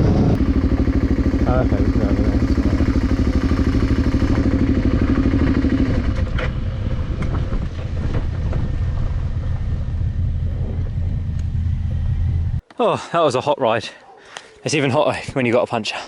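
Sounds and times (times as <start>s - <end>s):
wind noise: 0.0s - 0.4s, 4.1s - 12.6s
motorcycle engine rumble: 0.0s - 12.6s.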